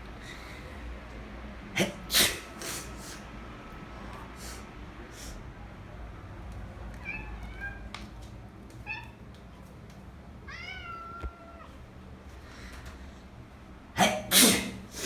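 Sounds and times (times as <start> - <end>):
cat meowing: 6.9 - 8.1, 8.7 - 9.6, 10.4 - 11.8.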